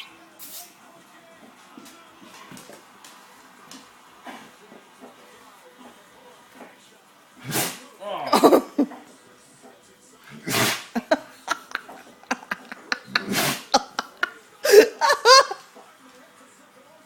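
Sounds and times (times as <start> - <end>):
dog sneezing: 7.4 - 7.8, 10.4 - 11.0, 13.2 - 13.8
person laughing: 8.3 - 9.0, 11.0 - 15.6.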